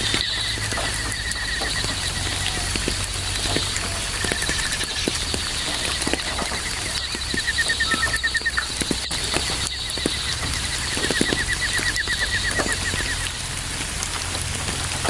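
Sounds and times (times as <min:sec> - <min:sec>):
crickets chirping: 0:00.0 - 0:14.0
steady rain falling: 0:00.0 - 0:15.0.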